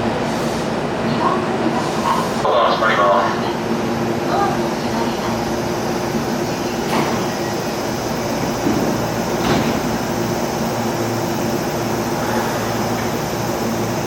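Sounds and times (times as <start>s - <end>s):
electric train humming: 0.0s - 14.0s.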